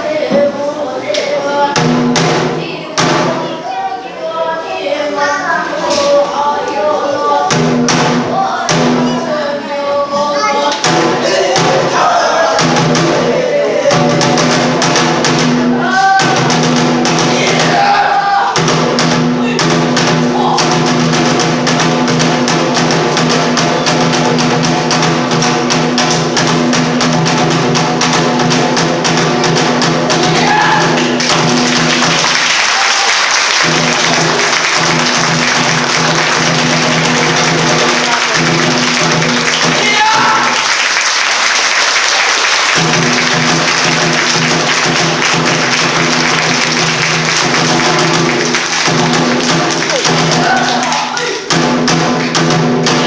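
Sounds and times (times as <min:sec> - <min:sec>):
rapid drum strokes: 0:01.6 - 0:03.6, 0:05.8 - 0:53.0
applause: 0:31.0 - 0:51.5.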